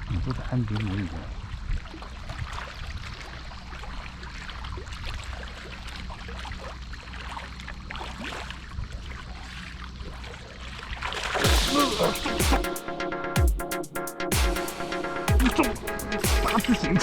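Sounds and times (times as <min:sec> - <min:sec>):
wind: 0:00.0 - 0:11.5.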